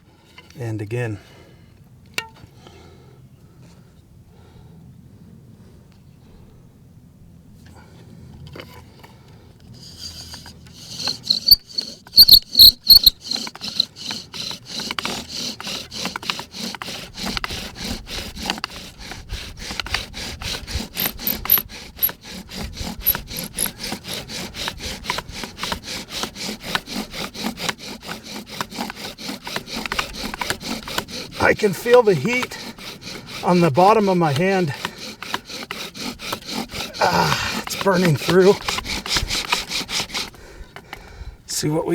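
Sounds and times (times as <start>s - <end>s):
bow drill rasping: 8.5s - 41.1s
wooden spindle squeaking: 9.7s - 40.4s.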